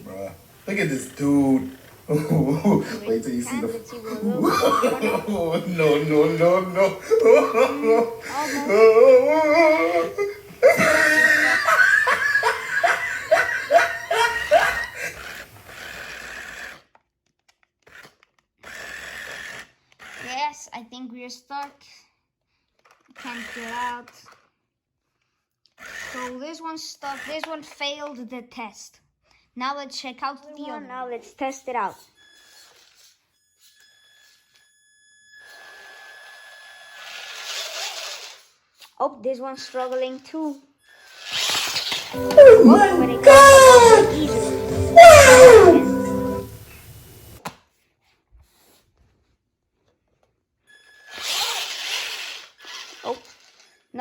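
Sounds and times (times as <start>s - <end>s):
person laughing: 2.1s - 15.2s
electric toy car motor whirring: 14.2s - 20.6s, 22.8s - 24.5s, 25.1s - 26.4s, 27.0s - 27.8s, 32.1s - 38.8s, 39.8s - 42.1s, 50.7s - 53.8s.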